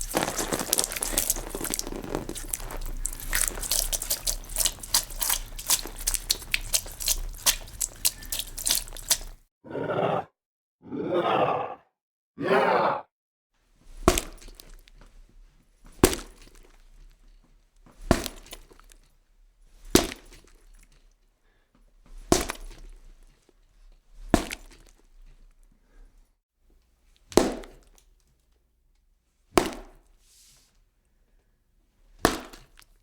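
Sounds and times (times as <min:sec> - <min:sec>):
wet impacts on raw meat: 0:00.0 - 0:09.4, 0:13.9 - 0:15.1, 0:15.9 - 0:16.8, 0:18.0 - 0:19.0, 0:19.9 - 0:20.6, 0:22.2 - 0:23.0, 0:24.2 - 0:25.0, 0:27.3 - 0:28.0, 0:29.6 - 0:30.1, 0:32.2 - 0:33.0.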